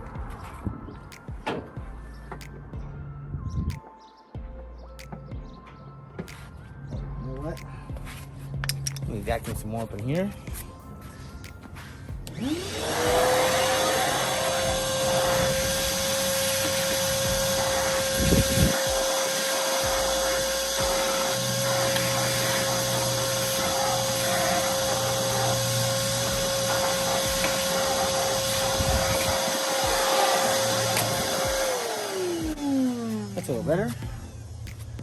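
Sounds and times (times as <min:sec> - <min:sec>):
vacuum cleaner motor whine: 0:12.2 - 0:34.6.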